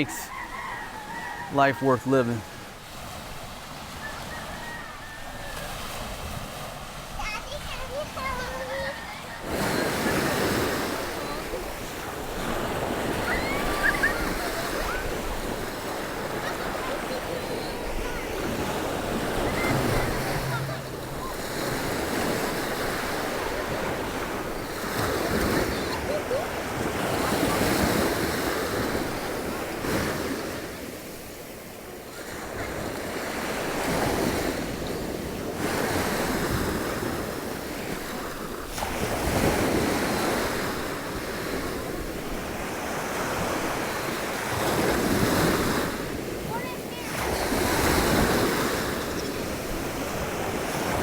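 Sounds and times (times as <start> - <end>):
surf washing onto beach: 0.0 - 51.0
wind buffeting microphone: 5.2 - 30.5.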